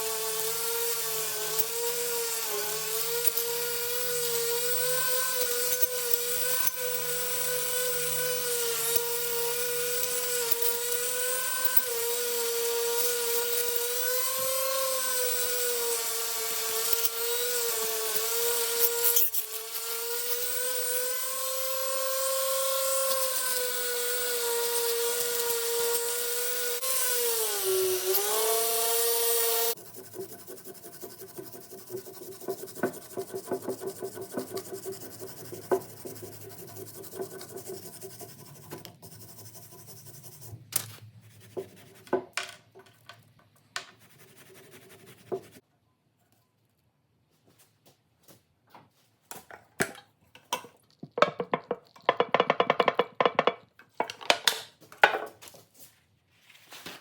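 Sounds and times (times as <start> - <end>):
power tool high whine: 0.0 - 29.8
rubbing and scraping: 29.7 - 42.4, 43.8 - 45.6.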